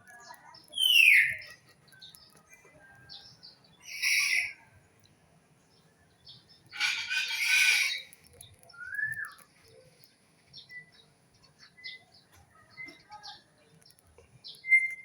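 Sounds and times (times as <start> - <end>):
harsh raspy bird call: 6.7 - 8.1.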